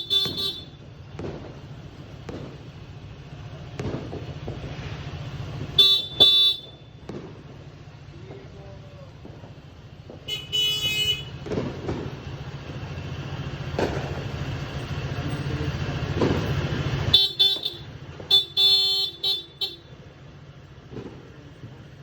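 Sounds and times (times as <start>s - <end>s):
vehicle horns honking: 0.0s - 0.9s, 5.8s - 7.0s, 10.2s - 11.5s, 17.1s - 20.0s
sharp bangs: 0.0s - 19.8s, 20.8s - 21.6s
low engine rumble: 0.0s - 22.0s.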